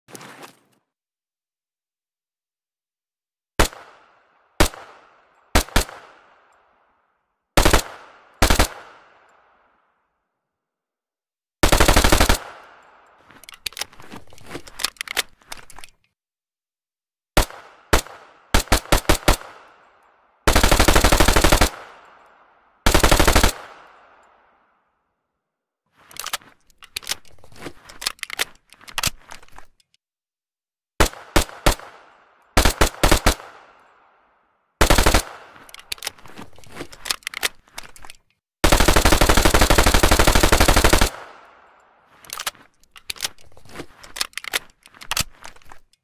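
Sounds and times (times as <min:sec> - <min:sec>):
submachine gun firing: 0:04.6 - 0:06.2, 0:07.6 - 0:09.2, 0:11.6 - 0:12.9, 0:17.4 - 0:19.8, 0:20.5 - 0:22.2, 0:22.8 - 0:24.1, 0:31.0 - 0:33.8, 0:34.8 - 0:35.6, 0:38.6 - 0:41.7.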